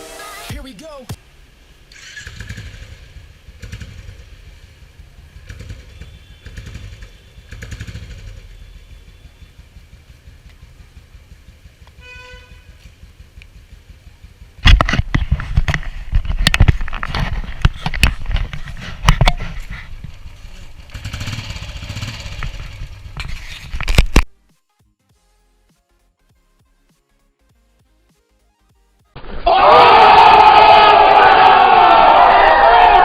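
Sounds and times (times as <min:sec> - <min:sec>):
motorcycle engine rumbling: 0:01.9 - 0:24.2.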